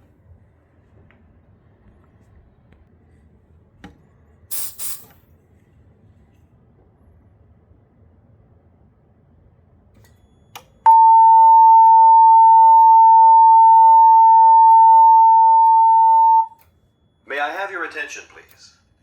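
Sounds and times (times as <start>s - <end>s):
fire alarm alert tone: 10.9s - 16.5s.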